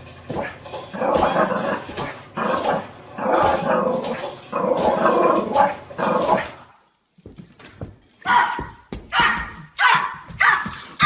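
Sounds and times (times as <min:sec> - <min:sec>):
dog growly vocalizing: 0:00.4 - 0:06.7.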